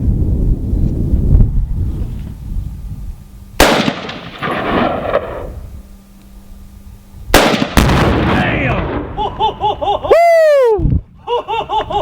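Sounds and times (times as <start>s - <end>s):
rolling echo: 3.6s - 5.5s
explosive target blast: 3.6s - 5.6s, 7.3s - 9.2s.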